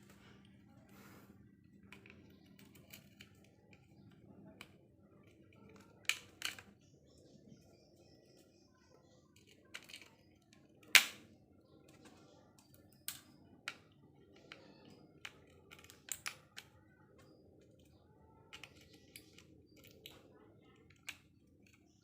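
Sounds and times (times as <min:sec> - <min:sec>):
light clicks and taps: 0:01.7 - 0:06.7.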